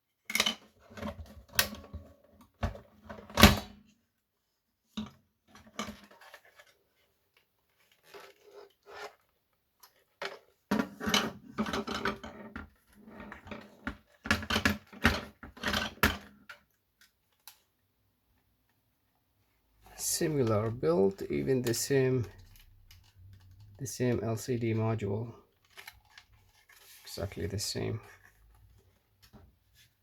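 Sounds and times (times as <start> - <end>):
plastic device clicking and rattling: 20.4 - 23.9.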